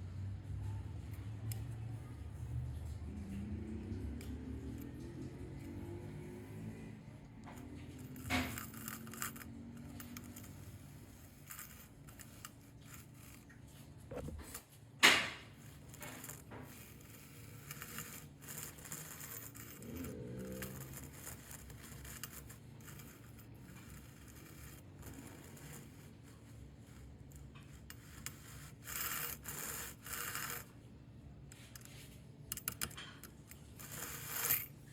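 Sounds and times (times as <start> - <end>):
metal parts and tools handled: 7.4 - 25.9, 31.6 - 34.7.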